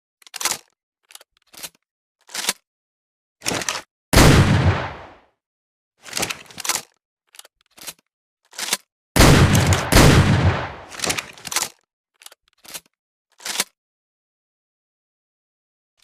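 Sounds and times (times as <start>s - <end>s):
shotgun shots booming: 4.2s - 5.2s, 9.2s - 11.1s
shotgun handling clicks: 6.1s - 13.7s.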